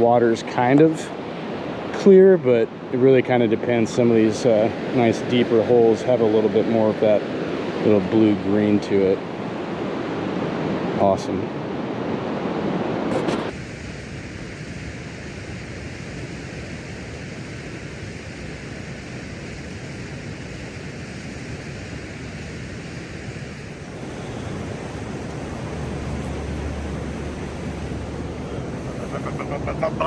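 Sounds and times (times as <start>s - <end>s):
river water rushing: 23.8s - 30.0s.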